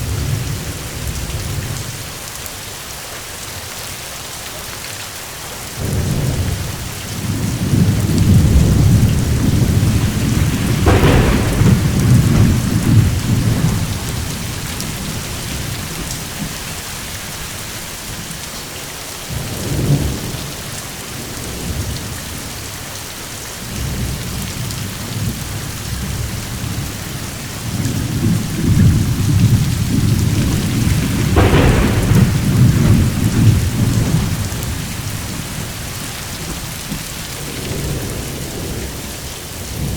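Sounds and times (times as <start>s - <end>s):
steady rain: 0.0s - 39.9s
rolling thunder: 5.8s - 18.4s, 23.6s - 39.9s.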